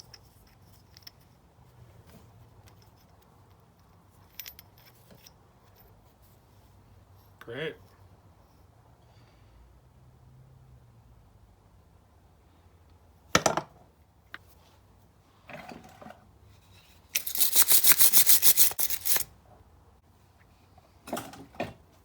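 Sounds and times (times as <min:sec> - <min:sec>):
quick scraping strokes: 0:17.1 - 0:19.3
metal parts knocking: 0:17.2 - 0:19.2.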